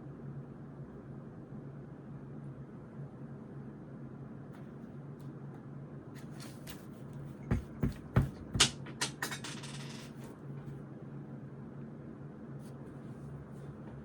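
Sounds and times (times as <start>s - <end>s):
steady low hum: 0.0s - 9.1s, 10.0s - 14.0s
knocks on a desk: 7.5s - 9.0s.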